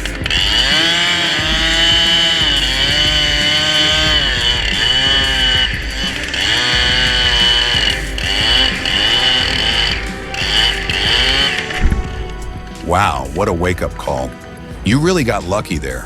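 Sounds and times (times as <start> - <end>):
chainsaw engine at high revs: 0.0 - 12.5.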